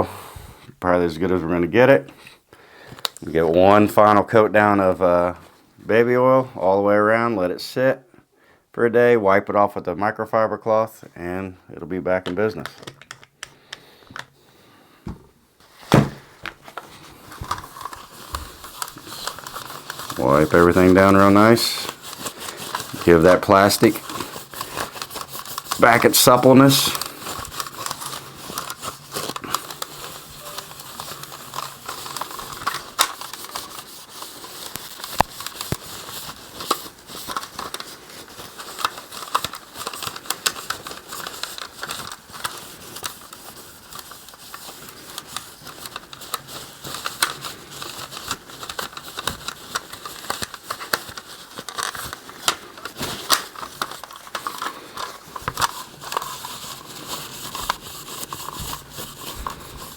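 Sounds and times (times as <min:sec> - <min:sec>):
rubbing plastic toy: 0:15.7 - 0:59.9.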